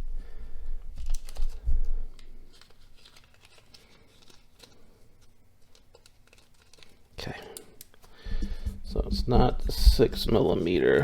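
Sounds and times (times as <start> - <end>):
low bumps: 8.3 - 10.8.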